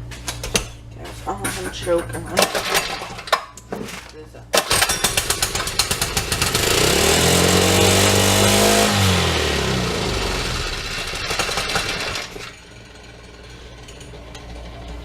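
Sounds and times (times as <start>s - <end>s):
mini bike engine revving: 4.6s - 13.5s.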